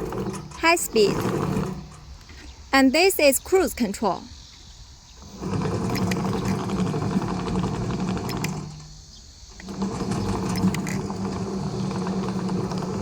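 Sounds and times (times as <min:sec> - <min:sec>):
toy tracked chassis motor hum: 0:00.0 - 0:02.2, 0:05.2 - 0:13.0.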